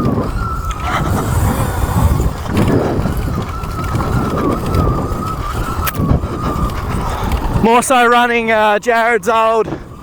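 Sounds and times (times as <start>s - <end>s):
electric motor whine: 0.0s - 7.7s
tyre noise: 0.0s - 8.6s
wind buffeting microphone: 0.0s - 10.0s.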